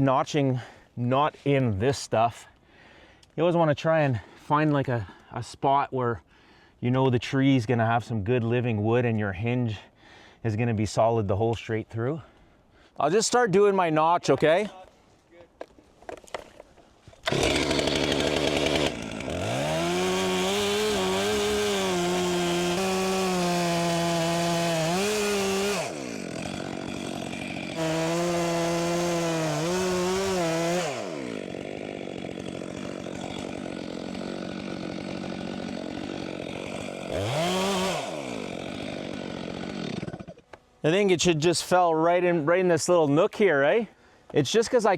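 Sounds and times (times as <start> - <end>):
chainsaw cutting wood: 15.6 - 40.6.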